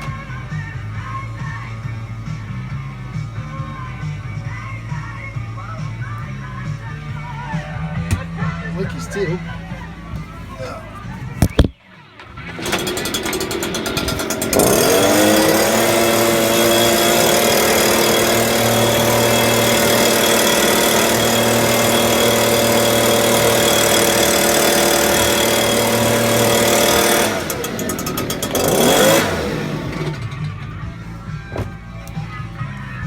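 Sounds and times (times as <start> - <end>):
chainsaw revving and idling: 12.4 - 30.8.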